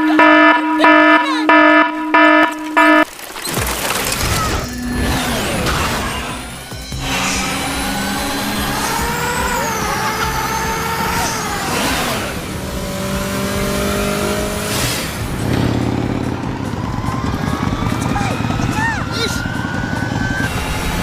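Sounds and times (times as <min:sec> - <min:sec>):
vehicle engines revving: 0:04.0 - 0:21.0
vehicle passing by: 0:04.9 - 0:21.0.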